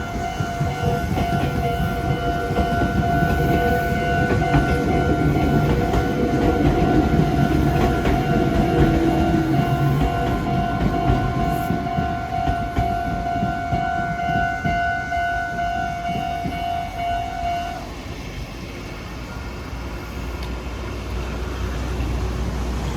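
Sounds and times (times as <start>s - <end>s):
crossing warning bell ringing: 0.0s - 18.4s
train wheels clacking over rails: 0.0s - 22.9s.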